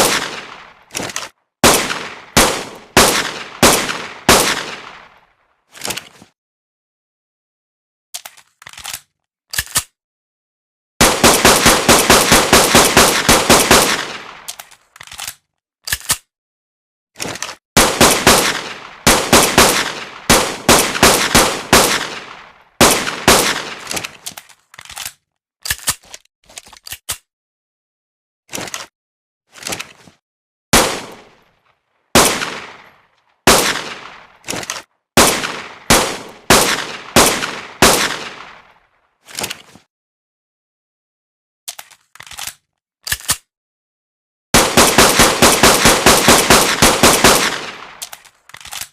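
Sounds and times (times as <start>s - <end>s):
pistol gunshots: 0.0s - 0.8s, 1.6s - 5.2s, 11.0s - 14.5s, 17.8s - 24.2s, 30.8s - 31.4s, 32.2s - 32.9s, 33.5s - 38.7s, 44.6s - 48.0s.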